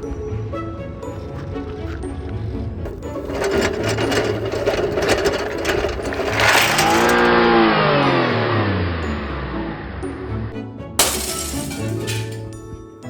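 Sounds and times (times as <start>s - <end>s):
power tool rattling: 2.9s - 7.6s, 11.0s - 12.4s.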